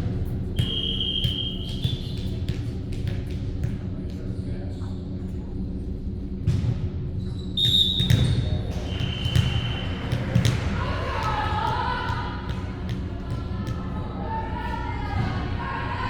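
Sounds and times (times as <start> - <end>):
sneakers squeaking: 0.5 - 3.8, 6.5 - 11.4
ball bouncing on gym floor: 0.6 - 3.9, 8.0 - 11.3
voices echoing in hall: 9.4 - 16.0.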